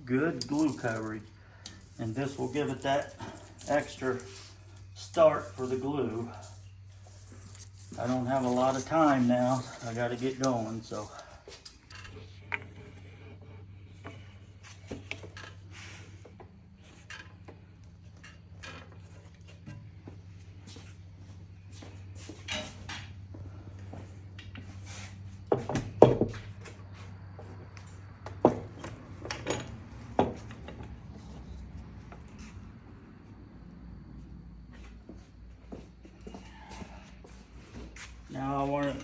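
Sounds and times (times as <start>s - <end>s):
metal clamps clinking and knocking: 0.3s - 12.7s, 28.4s - 31.4s.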